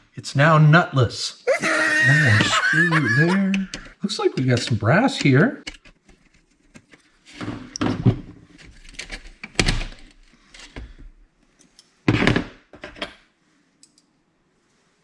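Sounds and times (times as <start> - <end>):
printer parts knocking and rattling: 3.5 - 4.8
tools bumping: 3.5 - 6.3.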